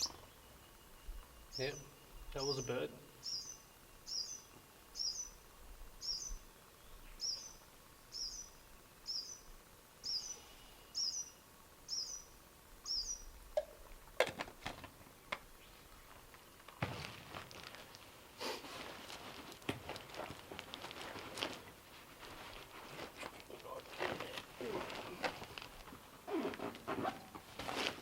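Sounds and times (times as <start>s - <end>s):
bird chirping: 0.0s - 5.4s, 6.0s - 13.8s
rustling: 13.9s - 28.0s.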